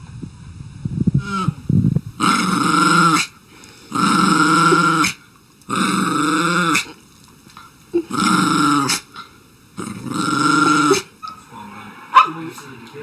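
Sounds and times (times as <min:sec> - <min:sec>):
dog howling calls: 0:09.9 - 0:11.4.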